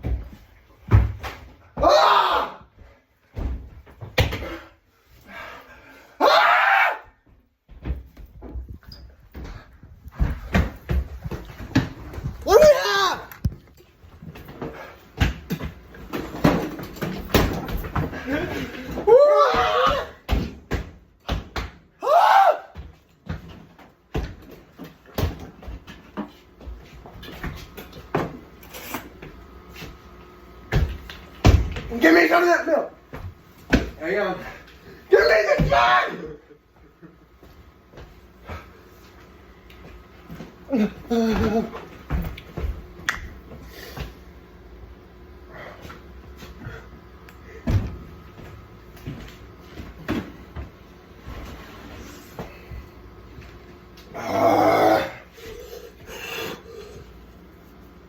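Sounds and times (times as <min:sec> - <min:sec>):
person gasping and groaning: 0:54.2 - 0:57.0.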